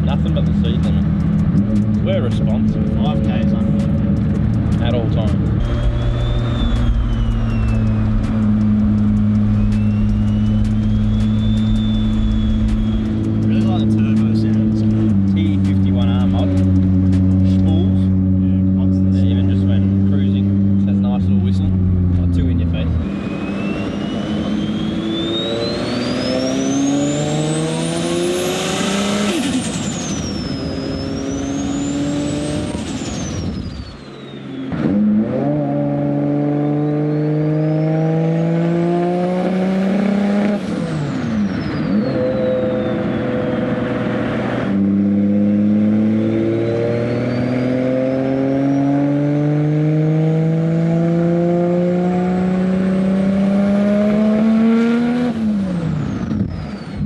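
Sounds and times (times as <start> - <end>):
car engine pulling through gears: 0.0 - 57.0
turbo whistle: 5.6 - 15.4, 23.1 - 35.0, 39.1 - 44.0, 46.3 - 49.2.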